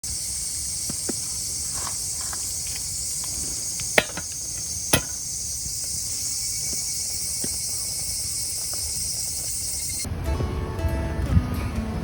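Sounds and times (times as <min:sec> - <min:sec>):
crickets chirping: 0:00.0 - 0:10.1
sharp knocks: 0:00.9 - 0:05.6.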